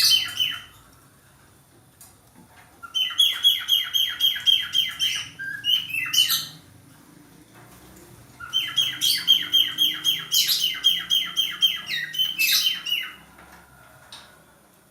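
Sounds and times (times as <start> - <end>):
budgerigar chirping: 0.0 - 0.7, 2.8 - 6.6, 8.4 - 13.2.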